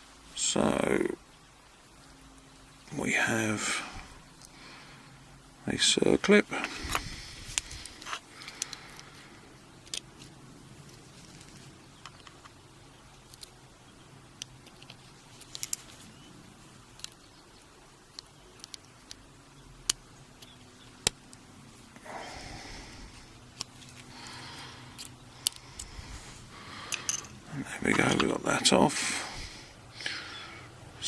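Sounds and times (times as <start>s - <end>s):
soft rubbing: 21.6s - 29.9s.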